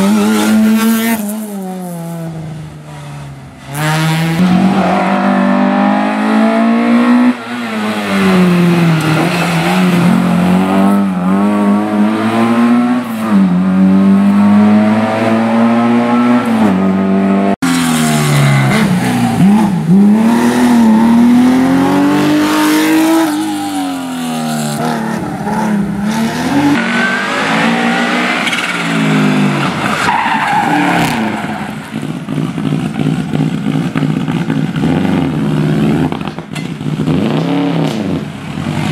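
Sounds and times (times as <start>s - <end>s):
rally car engines revving: 0.0s - 38.9s.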